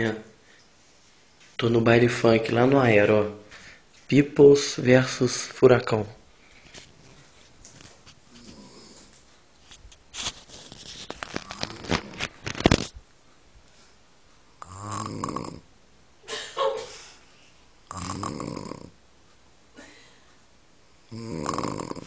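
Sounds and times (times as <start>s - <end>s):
rough crackling noise: 6.6s - 13.2s
woman snoring: 14.6s - 15.6s, 17.9s - 19.0s, 21.1s - 22.0s.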